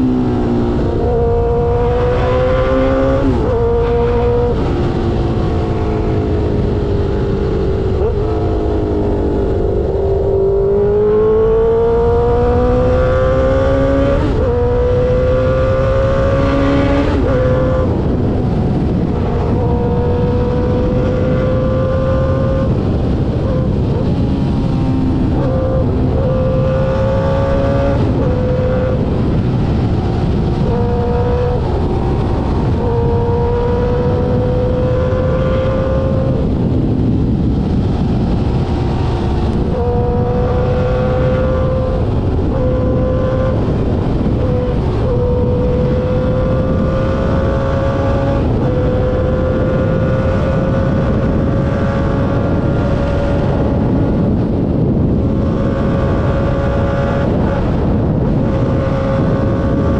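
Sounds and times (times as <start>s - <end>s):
motorcycle engine shifting gears: 0.0s - 59.9s
wind rush: 0.0s - 59.9s.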